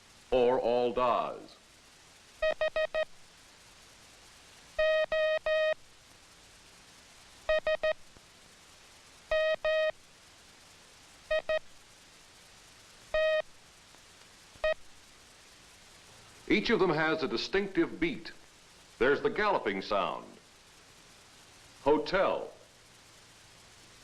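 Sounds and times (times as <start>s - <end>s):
morse code tone: 4.8s - 5.8s.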